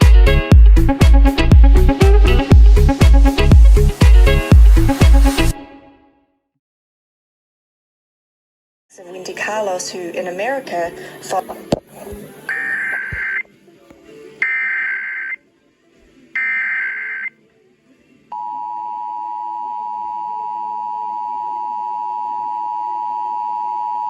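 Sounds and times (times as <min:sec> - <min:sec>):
two-tone alert signal: 0:12.5 - 0:13.4.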